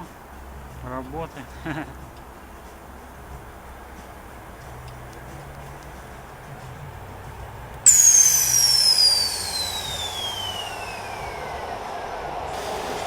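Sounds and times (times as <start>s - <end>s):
air valve hissing: 7.8s - 13.0s
falling whistle: 7.9s - 12.1s.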